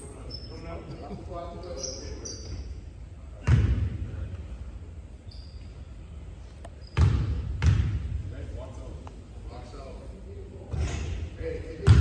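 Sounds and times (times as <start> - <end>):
basketball bouncing on hardwood floor: 7.0 - 8.0.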